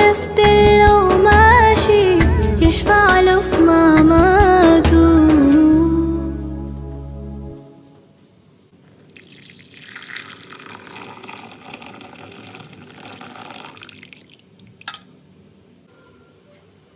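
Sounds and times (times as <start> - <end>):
water running: 9.0 - 14.8.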